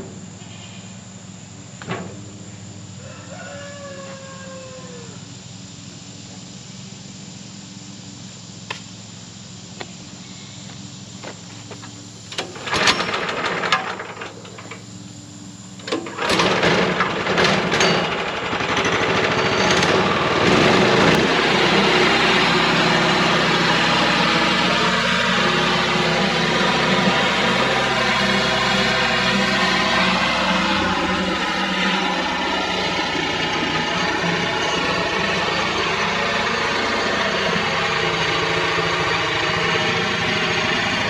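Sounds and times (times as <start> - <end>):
small gasoline engine running: 5.5 - 41.0
steady low hum: 20.0 - 41.0.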